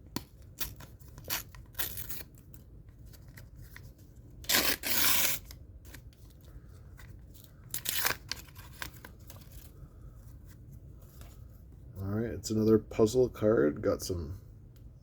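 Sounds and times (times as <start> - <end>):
wrapper tearing: 0.6 - 2.4, 4.4 - 6.0, 7.6 - 9.6
wrapper crinkling: 7.3 - 9.7.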